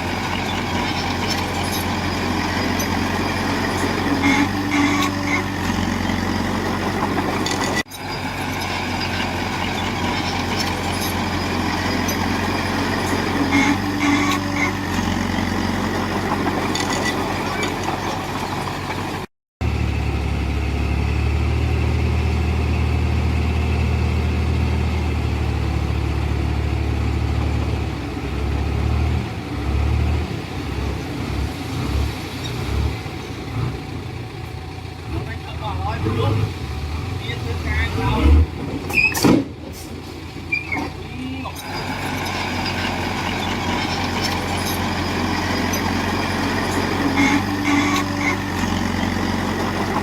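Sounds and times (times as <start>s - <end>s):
heavy diesel engine running: 0.0s - 32.3s, 32.9s - 50.0s.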